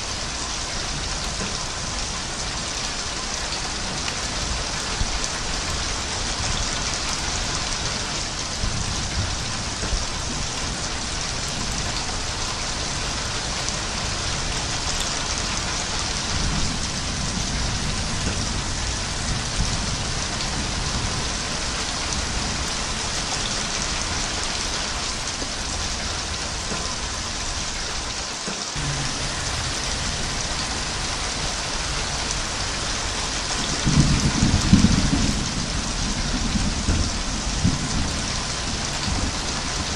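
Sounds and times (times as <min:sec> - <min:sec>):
heavy rain pouring: 0:00.0 - 0:39.9
thunder rumbling: 0:00.7 - 0:27.7, 0:28.8 - 0:39.9.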